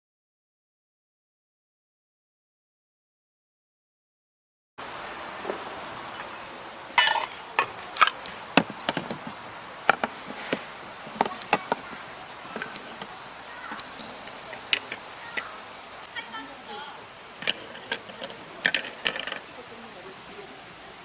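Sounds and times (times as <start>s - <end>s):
insects buzzing: 4.8s - 21.0s
sharp clicks and knocks: 7.0s - 15.5s.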